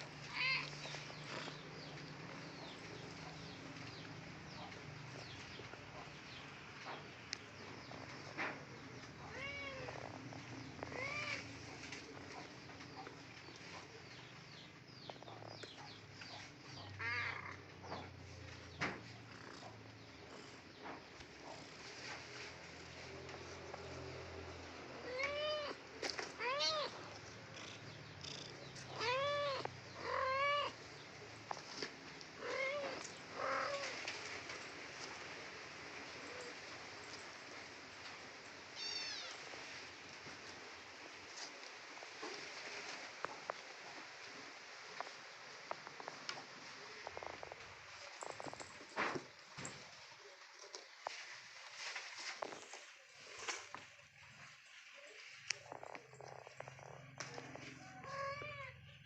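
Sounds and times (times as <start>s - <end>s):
kitten meowing: 26.4s - 27.0s.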